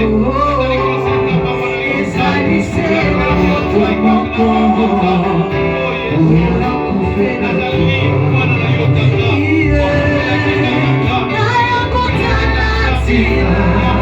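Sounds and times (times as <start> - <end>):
instrumental music with bass: 0.0 - 14.0
worship singing: 0.0 - 14.0.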